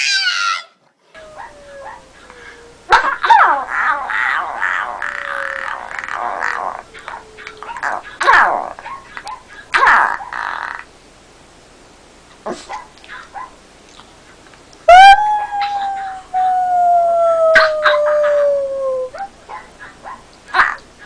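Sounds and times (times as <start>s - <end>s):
dog howling: 0.0s - 8.0s, 14.9s - 19.3s.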